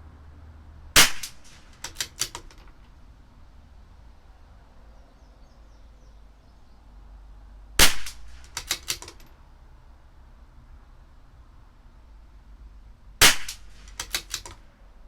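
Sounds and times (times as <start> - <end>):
rifle shot: 1.0 - 2.6, 7.8 - 9.2, 13.2 - 14.6
rifle bolt metallic clicks: 1.0 - 3.0, 7.9 - 9.4, 13.2 - 14.6.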